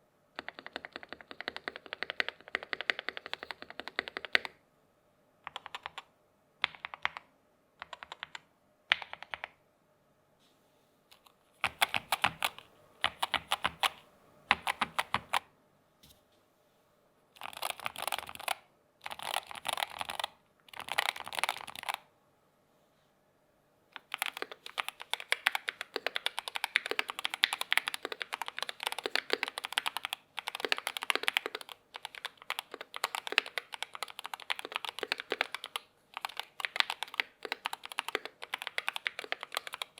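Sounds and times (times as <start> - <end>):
keyboard typing: 0.4 - 4.6, 5.4 - 9.6, 11.1 - 15.5, 17.4 - 22.1, 23.9 - 39.9.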